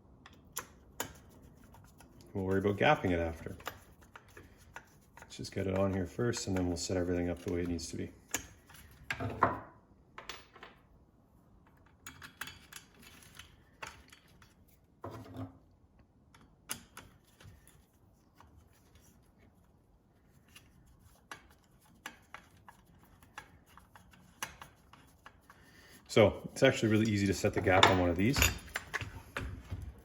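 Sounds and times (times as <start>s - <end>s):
hand tools clicking and tapping: 3.0s - 8.8s, 26.7s - 30.0s.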